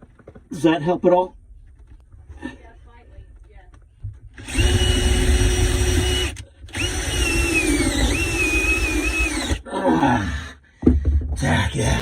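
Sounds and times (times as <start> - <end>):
power drill whining: 4.4 - 9.6.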